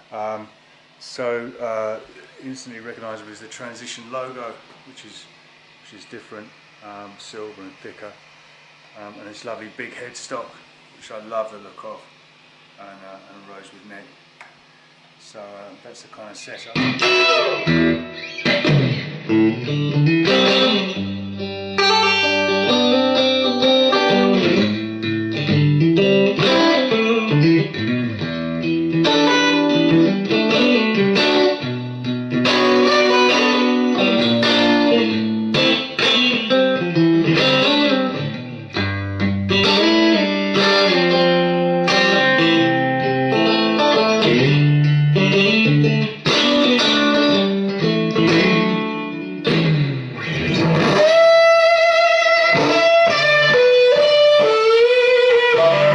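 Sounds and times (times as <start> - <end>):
fuzz electric guitar riffs: 16.5 - 55.9.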